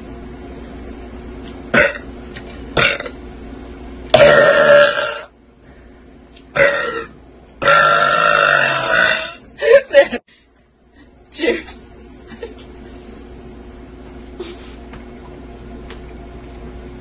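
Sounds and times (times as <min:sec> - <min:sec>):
girl burping loudly: 0:04.1 - 0:05.3, 0:06.6 - 0:09.4.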